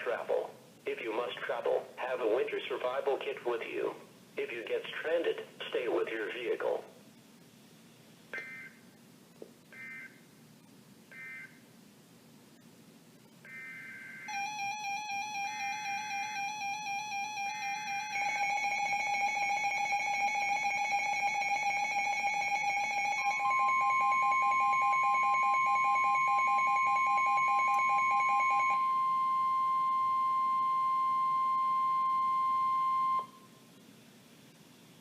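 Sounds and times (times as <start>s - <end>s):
steady attention tone: 13.4s - 33.7s
pulsing two-pitch alarm beep: 13.5s - 33.5s.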